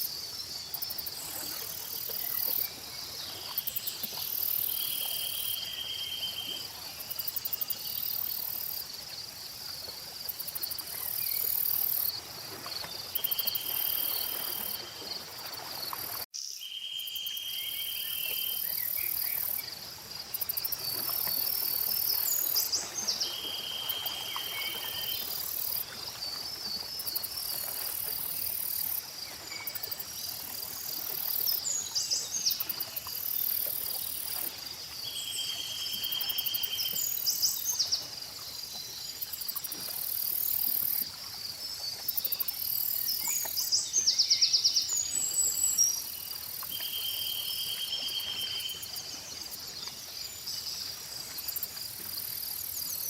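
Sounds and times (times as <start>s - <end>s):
crickets pulsing chirp: 0.0s - 53.0s.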